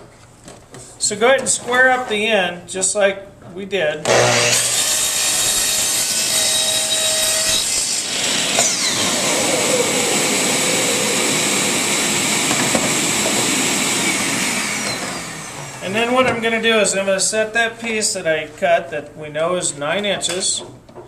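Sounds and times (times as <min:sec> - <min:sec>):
miter saw cutting wood: 0:04.1 - 0:16.0.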